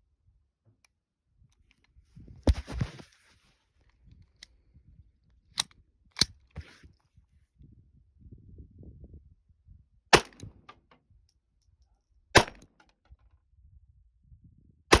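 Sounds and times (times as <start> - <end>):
pistol shots: 10.2 - 10.4, 12.4 - 12.6.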